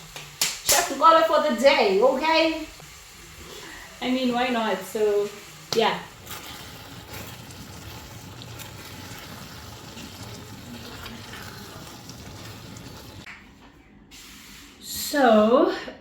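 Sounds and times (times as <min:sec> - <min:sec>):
food hissing in a pot: 0:01.8 - 0:13.3, 0:14.1 - 0:14.9.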